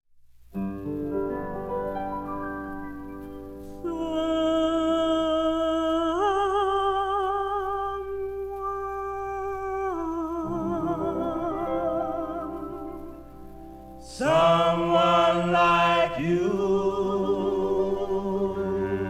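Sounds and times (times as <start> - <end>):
vocal group humming harmony: 3.7 - 19.0.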